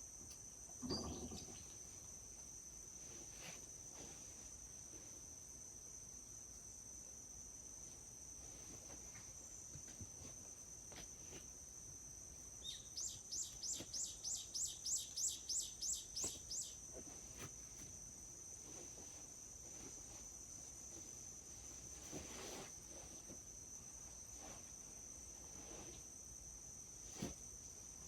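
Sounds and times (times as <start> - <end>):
insects droning: 0.0 - 28.0
bird singing quick notes: 12.6 - 16.8.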